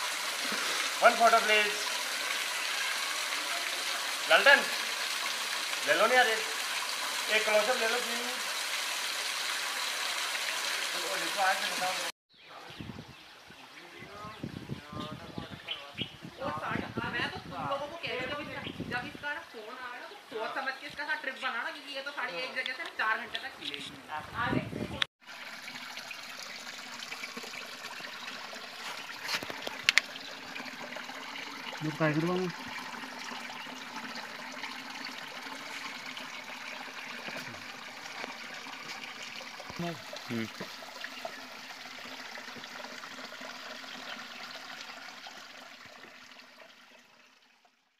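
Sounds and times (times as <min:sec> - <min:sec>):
running water rushing: 0:00.0 - 0:12.1, 0:25.2 - 0:47.9.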